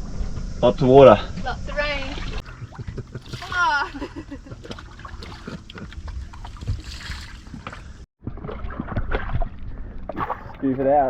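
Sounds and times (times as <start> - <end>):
water sloshing in a dinghy: 1.7 - 11.0
knocks and splashes against hull: 2.1 - 10.9.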